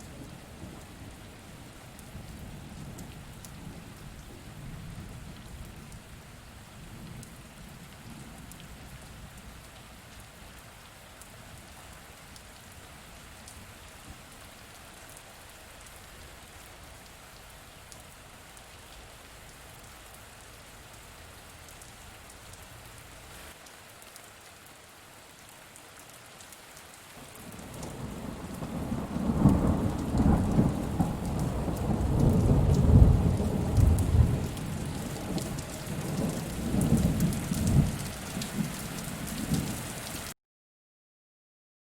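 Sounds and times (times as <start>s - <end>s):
steady rain: 0.0s - 40.4s
rolling thunder: 27.6s - 39.8s.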